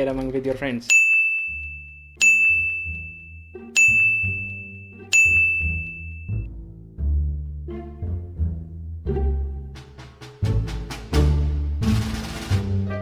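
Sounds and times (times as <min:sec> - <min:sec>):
bell-like ding: 0:00.9 - 0:06.5.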